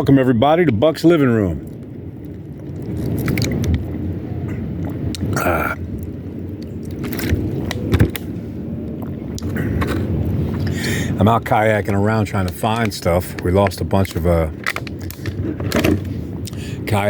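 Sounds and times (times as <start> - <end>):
wind buffeting microphone: 0.0 - 17.0
water splash: 1.6 - 6.1.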